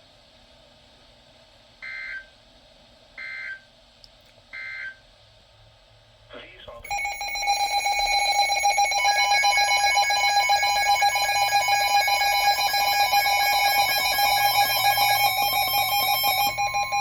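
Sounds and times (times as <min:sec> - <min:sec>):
electronic emergency alert tone: 0:06.8 - 0:17.0.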